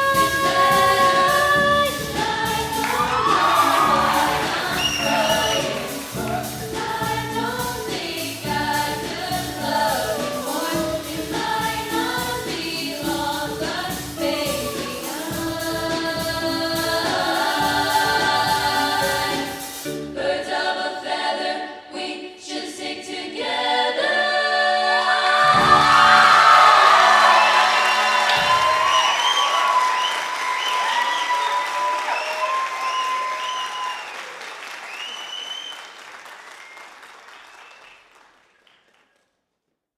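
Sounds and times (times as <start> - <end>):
choir singing: 0.0 - 30.1.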